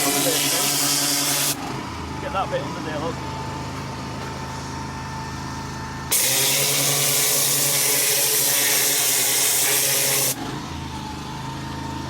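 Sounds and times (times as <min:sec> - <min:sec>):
pressure washer jet hissing: 0:00.0 - 0:01.6, 0:06.1 - 0:10.4
washer engine hum: 0:00.0 - 0:12.0.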